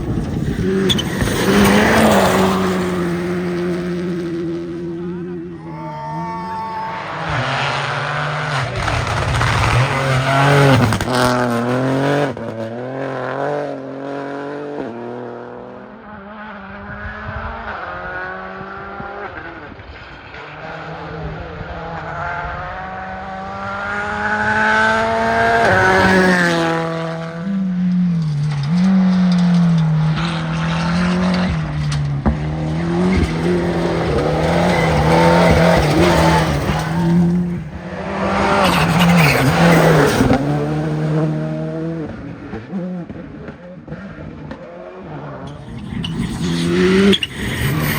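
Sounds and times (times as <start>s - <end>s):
tyre squeal: 0.0s - 3.1s, 5.4s - 11.0s, 29.6s - 40.5s, 45.5s - 47.9s
car engine revving through gears: 0.0s - 5.8s, 6.9s - 47.9s.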